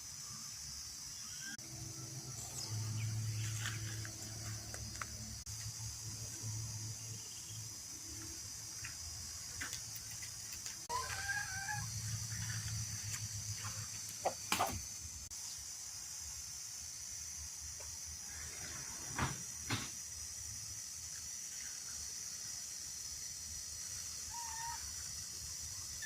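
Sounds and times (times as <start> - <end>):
steady high hiss: 0.0 - 26.0
rooster crowing: 10.9 - 12.3.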